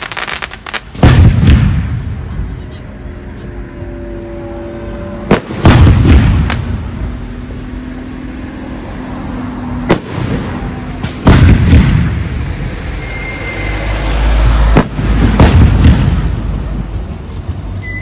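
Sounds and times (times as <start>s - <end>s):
fireworks bangs: 0.0s - 3.0s, 5.0s - 7.2s, 9.3s - 17.8s
echoing rumble: 0.0s - 13.2s.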